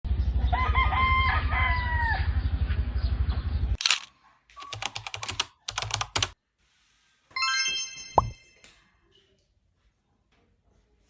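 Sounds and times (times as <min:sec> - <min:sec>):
rooster crowing: 0:00.5 - 0:02.5.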